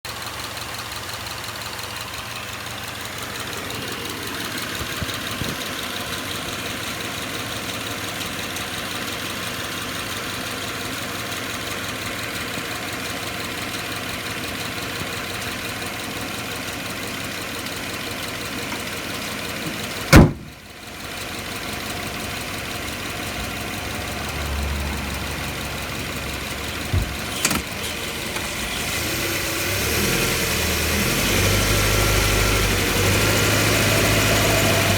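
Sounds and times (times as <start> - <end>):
road noise: 0.8 - 34.9
loud thump: 20.1 - 20.6, 26.9 - 27.7
drivetrain grinding: 21.6 - 34.9.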